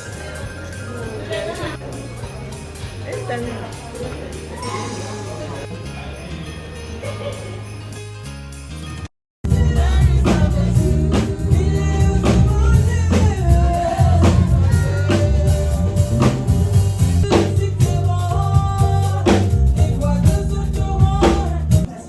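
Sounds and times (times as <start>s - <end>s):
song with singing and drums: 9.4s - 22.0s.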